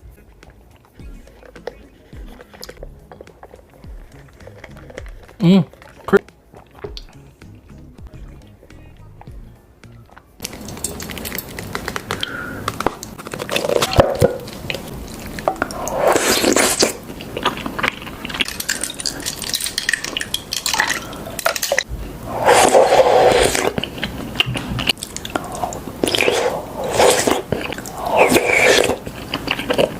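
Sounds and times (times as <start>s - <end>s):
chewing tapioca pearls: 0.1s - 7.3s, 9.0s - 29.9s
sipping through a straw: 10.5s - 18.9s, 20.7s - 29.9s.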